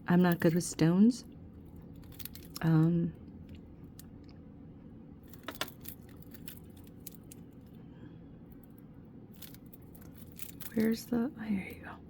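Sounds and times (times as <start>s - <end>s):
silver bracelets clinking: 1.7s - 2.6s, 5.2s - 7.8s, 8.6s - 11.3s.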